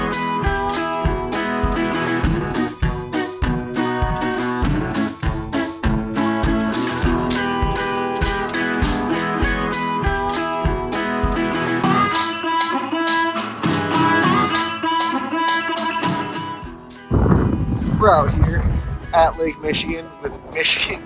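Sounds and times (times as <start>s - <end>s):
plucked guitar music: 0.0s - 21.0s
low beat: 16.7s - 20.6s.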